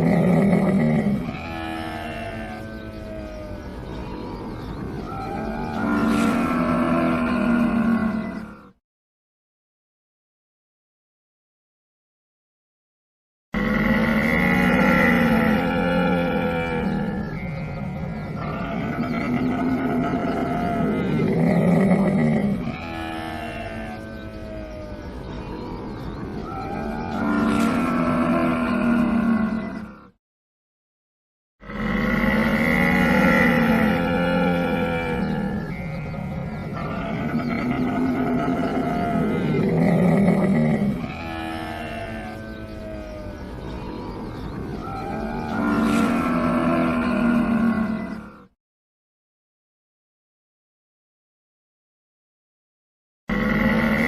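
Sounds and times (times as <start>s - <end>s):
camel calling: 0.0s - 8.7s, 13.6s - 30.1s, 31.6s - 48.4s.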